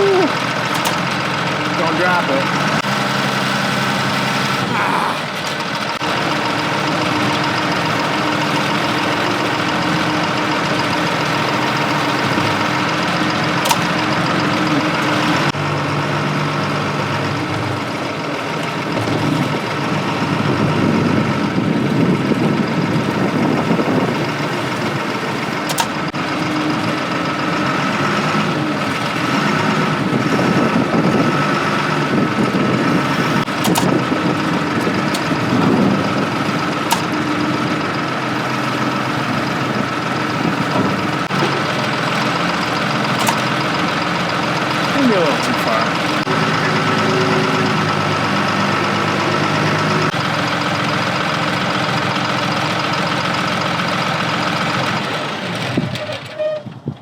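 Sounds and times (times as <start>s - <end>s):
loader diesel engine revving: 0.0s - 56.4s.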